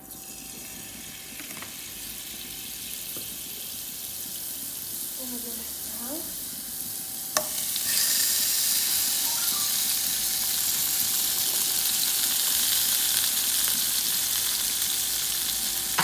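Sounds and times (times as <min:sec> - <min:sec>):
zucchini sizzling in hot oil: 0:00.1 - 0:16.0.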